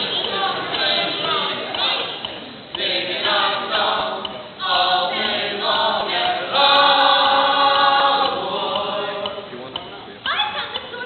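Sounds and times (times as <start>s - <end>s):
group singing a capella: 0.0s - 9.5s.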